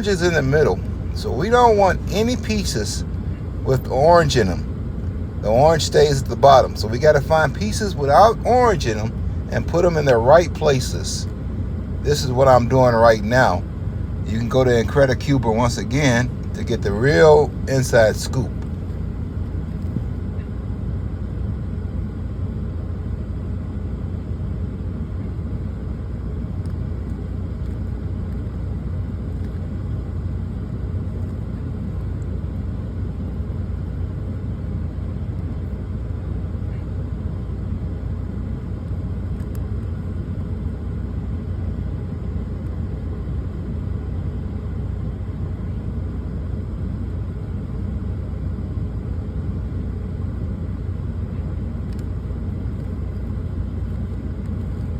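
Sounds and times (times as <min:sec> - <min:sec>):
truck engine rumbling: 0:00.0 - 0:20.4.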